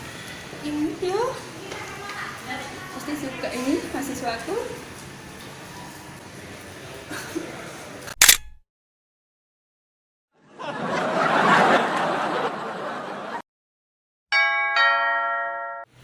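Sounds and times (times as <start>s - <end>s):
sharp click: 8.1s - 8.6s.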